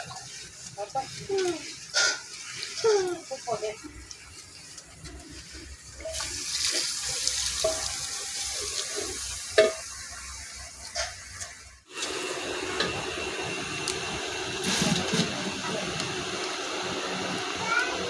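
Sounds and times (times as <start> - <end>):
tap water running into sink: 6.0 - 13.1.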